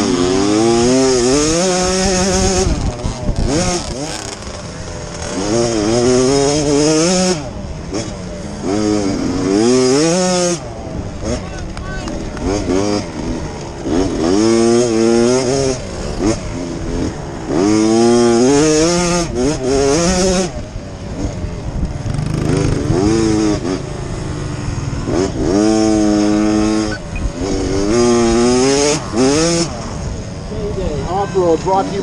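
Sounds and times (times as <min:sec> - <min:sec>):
motorcycle engines revving: 0:00.0 - 0:32.0.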